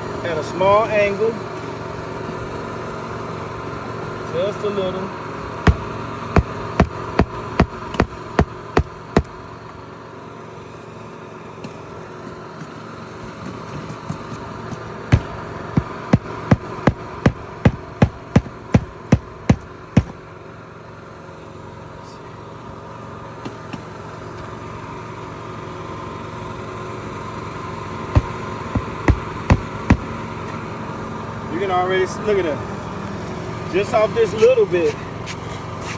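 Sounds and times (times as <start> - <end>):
steady engine hum: 0.0 - 35.9
hammer striking roof: 5.7 - 9.4, 15.1 - 20.2, 28.2 - 30.2.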